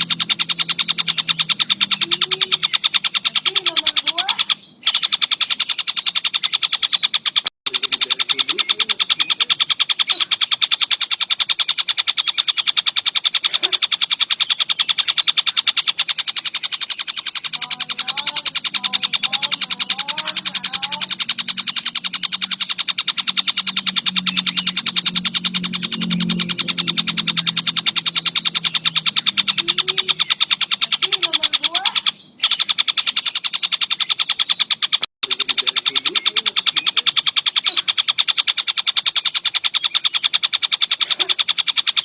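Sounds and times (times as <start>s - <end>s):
low warbling bird notes: 0.0s - 6.2s, 13.5s - 34.2s
kingfisher chattering call: 0.0s - 42.0s
low steady sound: 17.2s - 31.8s.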